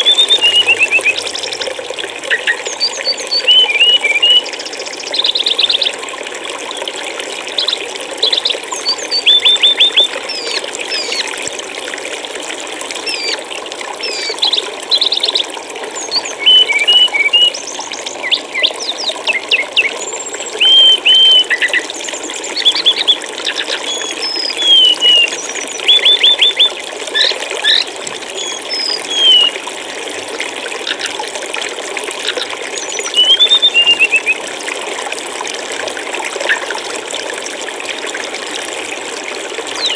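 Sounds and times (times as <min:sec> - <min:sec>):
songbird chirping: 0:00.0 - 0:01.5, 0:16.1 - 0:21.9, 0:22.5 - 0:29.5, 0:32.9 - 0:34.4
stream water flowing: 0:00.0 - 0:39.9.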